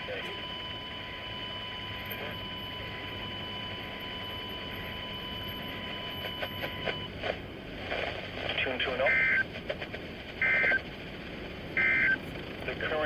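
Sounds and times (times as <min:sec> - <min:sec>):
steady high-pitched beep: 0:00.0 - 0:07.1, 0:10.4 - 0:10.8, 0:11.8 - 0:12.2
receiver hiss: 0:00.0 - 0:10.9
radio crackles: 0:00.0 - 0:13.0.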